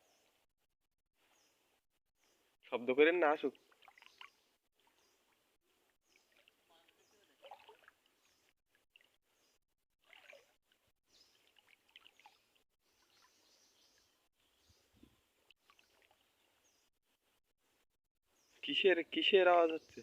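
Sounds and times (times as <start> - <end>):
faint bird chirps: 11.1 - 16.9.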